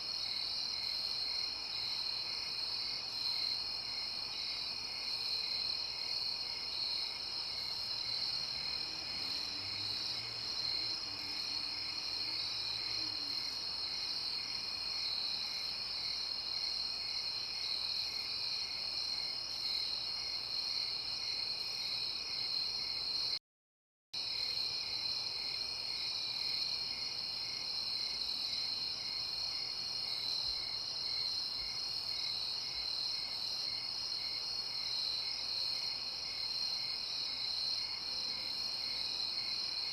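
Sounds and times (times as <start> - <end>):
slow pulsing insect chirp: 0.1 - 23.4.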